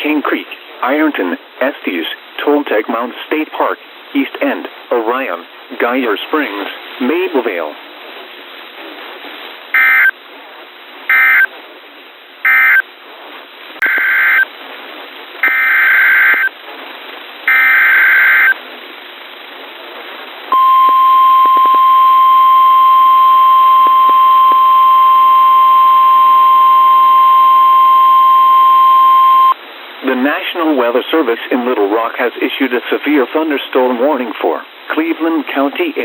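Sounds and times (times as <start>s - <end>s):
warning alarm tone: 20.5s - 29.6s.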